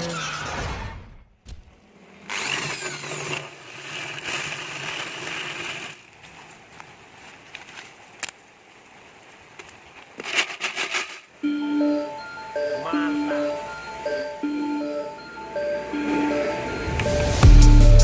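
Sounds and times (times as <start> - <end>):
small electric motor humming: 2.2 - 6.0.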